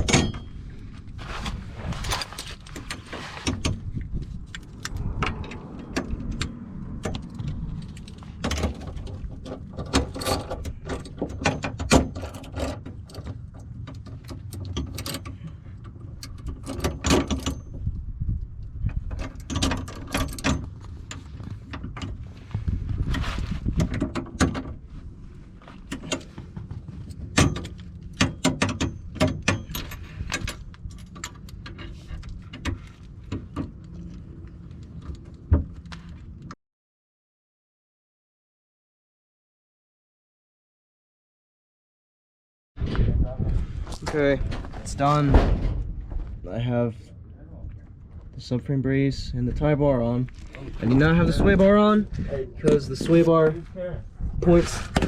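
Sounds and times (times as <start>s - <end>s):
low background rumble: 0.0s - 36.5s, 42.9s - 55.0s
sharp knocks and clicks: 25.9s - 34.0s.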